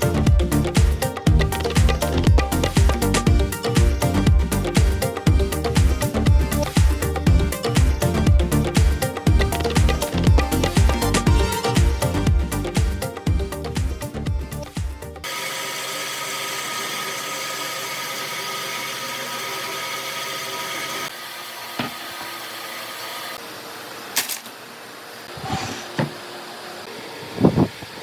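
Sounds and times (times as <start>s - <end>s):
music: 0.0s - 15.3s
electric power tool running: 15.2s - 28.0s.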